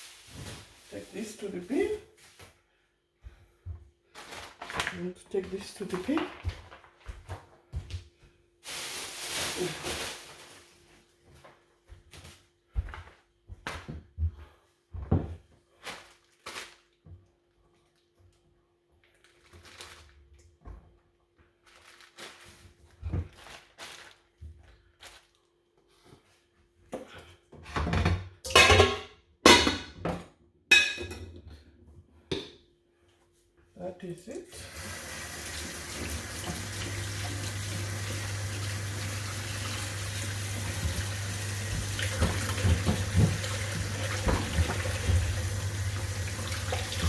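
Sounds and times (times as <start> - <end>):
kitchen items knocking and thudding: 27.6 - 31.5, 40.2 - 47.0.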